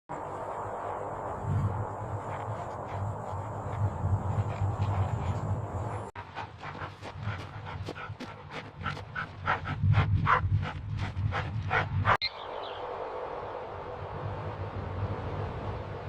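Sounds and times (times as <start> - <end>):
dog panting: 2.2 - 12.2.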